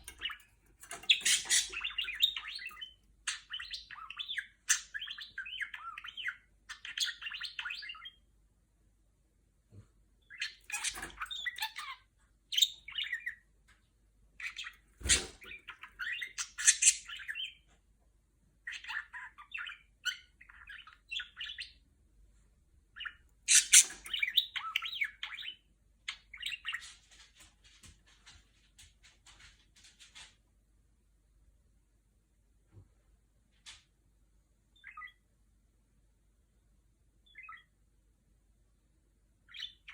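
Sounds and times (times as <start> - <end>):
budgerigar chirping and warbling: 0.0 - 8.2, 10.2 - 13.4, 14.4 - 17.6, 18.6 - 21.8, 23.0 - 26.8, 34.8 - 35.2, 37.2 - 37.8, 39.5 - 39.9.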